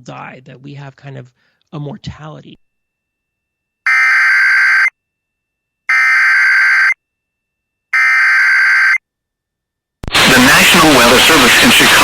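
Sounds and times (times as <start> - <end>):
buzzing digital data signal: 3.8 - 5.0, 5.9 - 7.0, 8.0 - 9.0.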